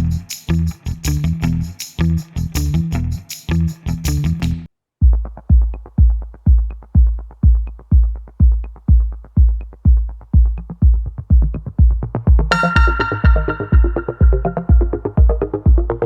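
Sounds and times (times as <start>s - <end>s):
electronic music with kick drum: 4.4s - 16.0s.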